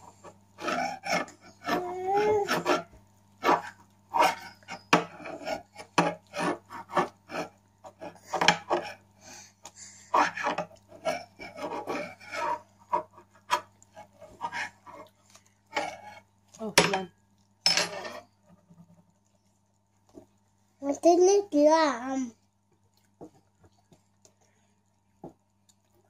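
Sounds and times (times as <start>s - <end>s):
dishes clicking and knocking: 8.3s - 8.8s, 17.7s - 18.2s
chewing: 22.8s - 26.0s.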